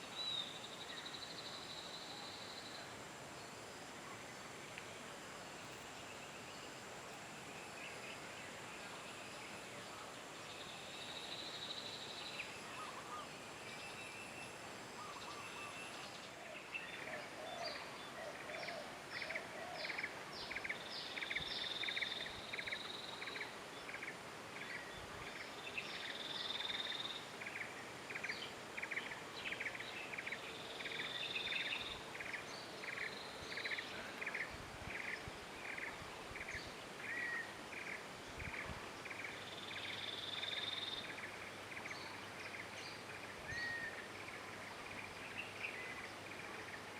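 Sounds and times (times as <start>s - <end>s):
birdsong: 10.5s - 46.9s.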